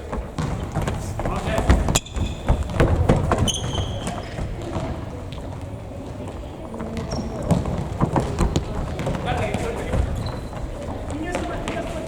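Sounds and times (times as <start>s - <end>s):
ball kicks: 0.0s - 5.6s
running footsteps on court: 0.0s - 12.0s
shoe squeaks: 0.5s - 5.0s, 6.8s - 12.0s.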